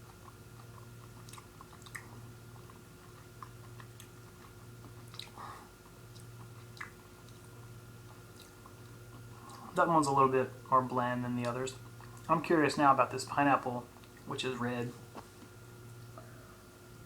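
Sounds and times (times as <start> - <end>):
faint chewing: 0.0 - 10.2, 11.3 - 12.8, 13.8 - 14.3
mouth clicks and smacks: 0.2 - 5.4, 6.1 - 7.5.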